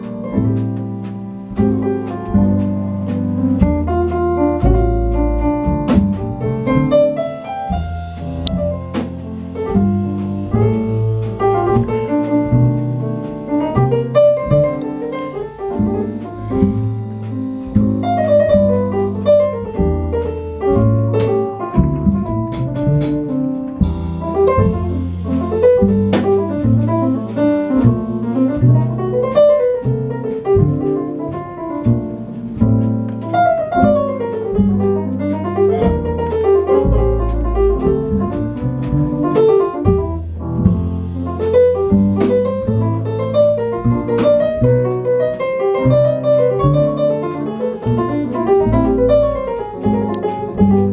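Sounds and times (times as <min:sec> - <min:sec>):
jazz piano runs: 0:00.0 - 0:50.9
walking bass line: 0:00.0 - 0:50.9
cymbal strokes: 0:07.7 - 0:14.5, 0:23.8 - 0:29.5.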